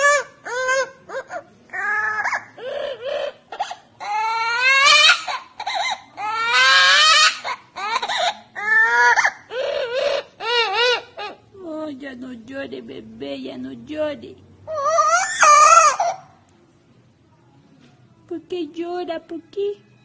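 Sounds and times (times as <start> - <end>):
bird mimicking baby crying: 0.0 - 11.5, 14.7 - 16.4.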